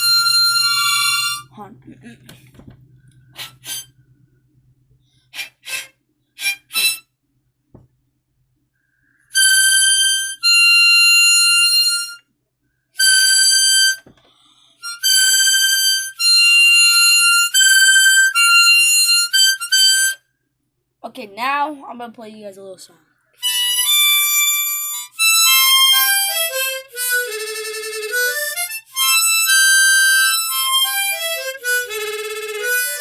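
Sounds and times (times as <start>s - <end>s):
harmonica high notes: 0.0s - 1.6s, 3.2s - 4.3s, 5.1s - 7.2s, 8.8s - 12.3s, 12.9s - 20.3s, 23.4s - 33.0s.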